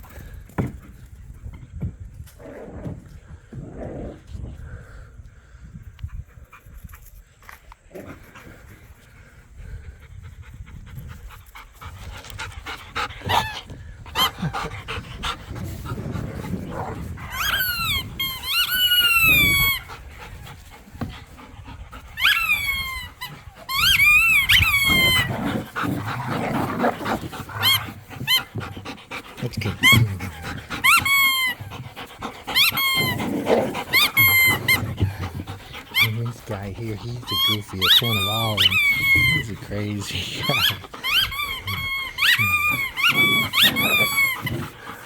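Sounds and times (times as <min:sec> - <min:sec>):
dogs growling and panting: 0:00.0 - 0:45.0
squeaky toy squeaking: 0:17.3 - 0:19.8, 0:22.2 - 0:25.3, 0:29.8 - 0:31.7, 0:32.5 - 0:33.2, 0:33.9 - 0:35.1, 0:37.0 - 0:39.6, 0:40.2 - 0:44.6.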